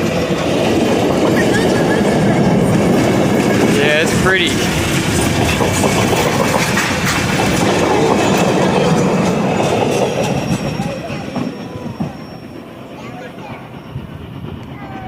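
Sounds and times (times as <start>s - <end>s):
train wheels clicking over rail joints: 0.0s - 15.0s
wheel squeal: 5.1s - 15.0s.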